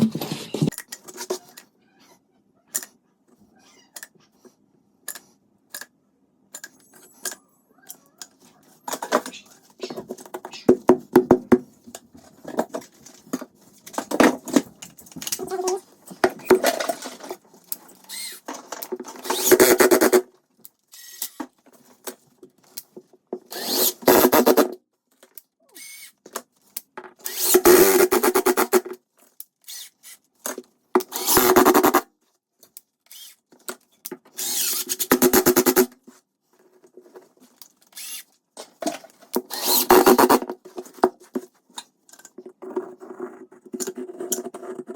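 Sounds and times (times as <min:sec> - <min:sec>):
clicks and rattling of handling: 0:11.9 - 0:19.3.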